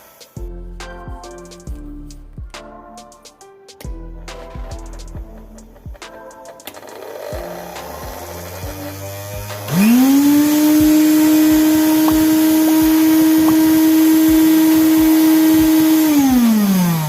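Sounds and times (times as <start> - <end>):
mixer grinder motor whine: 6.7 - 17.0.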